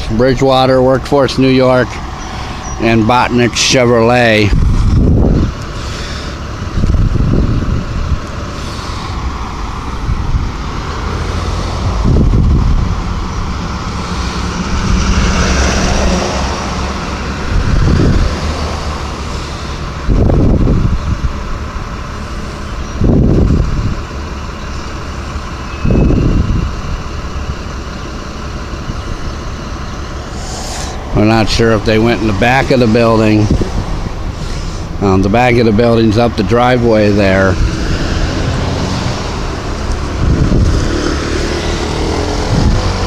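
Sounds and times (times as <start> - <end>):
vehicle passing: 0.0 - 23.7, 30.0 - 43.0
road traffic going by: 0.0 - 43.0
short loud low rumbles: 1.8 - 21.5.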